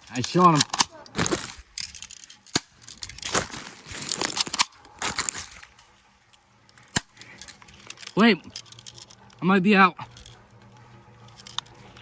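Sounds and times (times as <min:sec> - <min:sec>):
crunching and rustling: 0:00.0 - 0:09.3.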